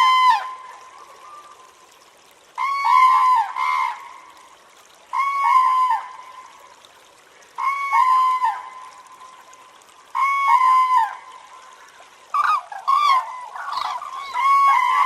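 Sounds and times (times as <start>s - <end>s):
crane calling: 12.3s - 15.0s.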